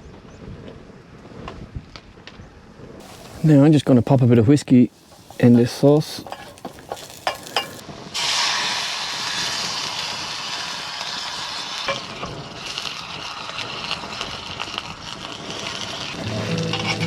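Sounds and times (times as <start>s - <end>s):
liquid sizzling in a hot pan: 3.0s - 3.6s, 4.9s - 17.0s.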